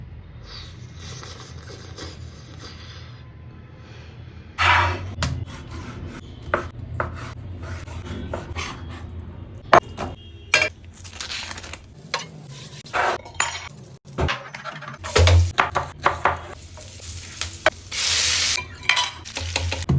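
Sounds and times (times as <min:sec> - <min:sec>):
utensils and dishes clinking: 0:11.6 - 0:15.8, 0:18.5 - 0:19.9.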